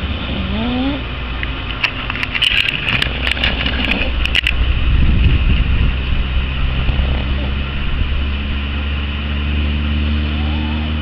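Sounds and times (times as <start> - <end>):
sharp clicks: 1.4 - 4.6.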